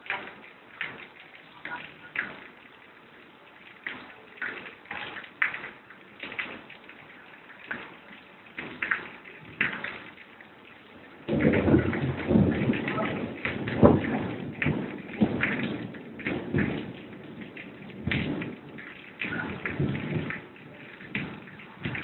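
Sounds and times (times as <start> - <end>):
drips and splashes: 0.0 - 22.0
rain pattering: 0.0 - 22.0
deep roll of thunder: 11.2 - 22.0.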